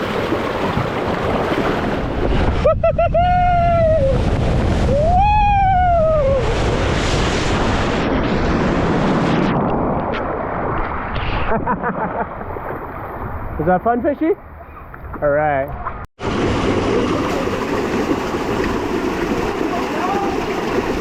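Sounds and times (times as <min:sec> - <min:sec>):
water rushing: 0:00.0 - 0:02.6, 0:16.2 - 0:21.0.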